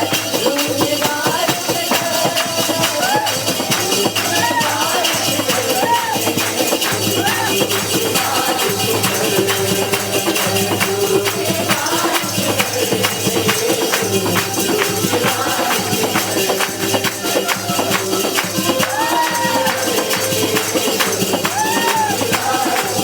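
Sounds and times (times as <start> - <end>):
band playing worship music: 0.0 - 23.0
tambourine shaking: 0.0 - 23.0.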